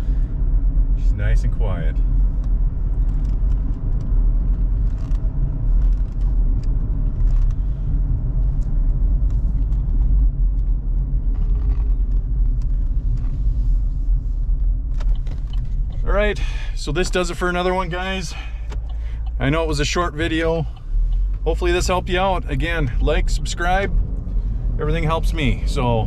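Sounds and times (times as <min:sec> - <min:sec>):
road and tyre rumble in car cabin: 0:00.0 - 0:26.0.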